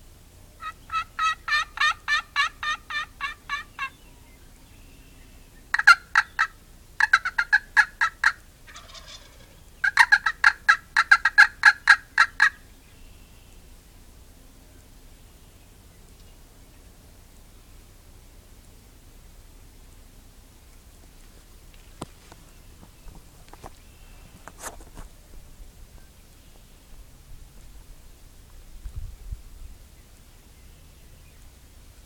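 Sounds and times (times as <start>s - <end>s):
turkeys gobbling: 0.6s - 4.0s, 5.7s - 12.6s.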